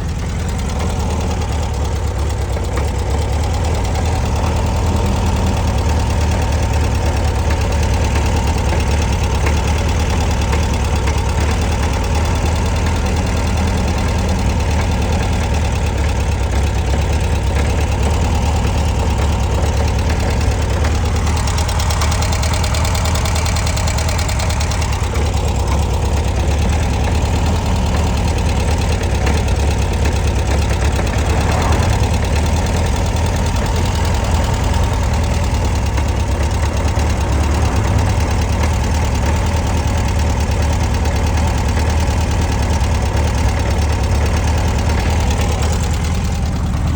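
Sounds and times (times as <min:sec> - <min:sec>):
car engine idling: 0:00.0 - 0:46.9
engine clunking noise: 0:00.0 - 0:46.9.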